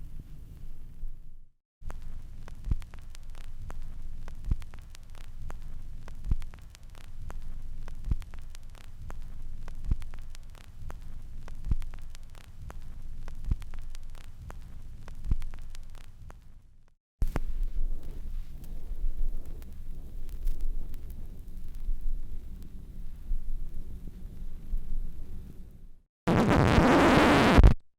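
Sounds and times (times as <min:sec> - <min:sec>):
vinyl record surface noise: 0:00.0 - 0:27.8
record pops: 0:01.8 - 0:16.6, 0:17.2 - 0:22.8, 0:26.3 - 0:27.9.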